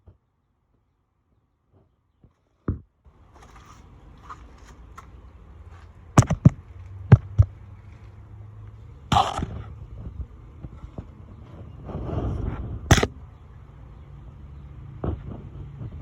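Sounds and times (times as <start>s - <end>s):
steady low hum: 3.1s - 16.0s
thud: 6.2s - 7.5s, 12.9s - 13.1s
sharp knocks on wood: 6.2s - 7.6s
short noisy rasp: 9.1s - 9.7s.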